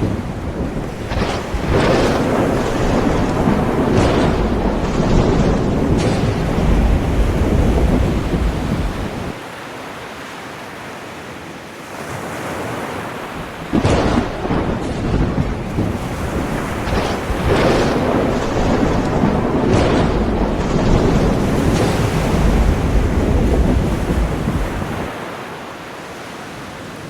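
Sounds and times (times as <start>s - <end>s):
deep rumble: 0.0s - 9.4s, 13.7s - 25.1s
wind buffeting microphone: 0.0s - 9.4s, 12.5s - 25.2s
ocean waves breaking: 0.0s - 27.0s.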